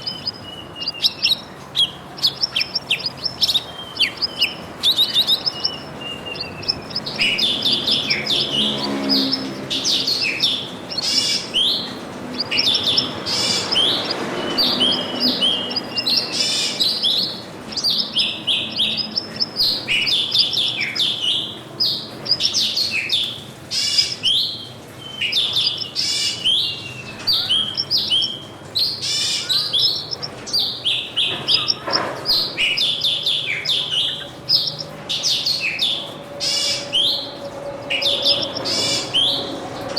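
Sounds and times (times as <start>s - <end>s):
small songbirds chirping: 0.0s - 39.9s.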